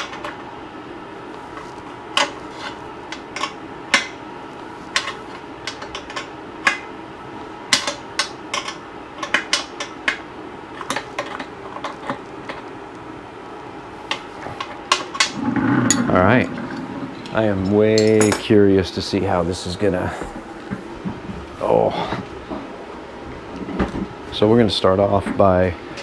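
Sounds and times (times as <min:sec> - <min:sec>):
low hum: 0:15.1 - 0:21.6.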